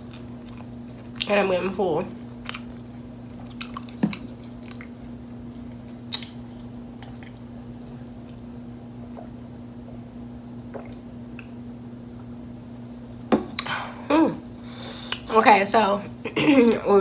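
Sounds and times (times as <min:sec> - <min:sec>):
person chewing food: 0:00.0 - 0:01.3, 0:02.2 - 0:08.4
steady low hum: 0:00.0 - 0:17.0.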